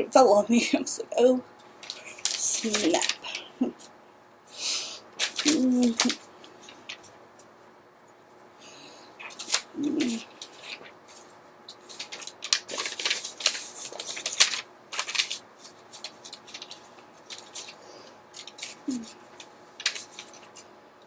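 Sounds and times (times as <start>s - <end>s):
person humming: 9.8s - 10.3s, 18.8s - 19.2s.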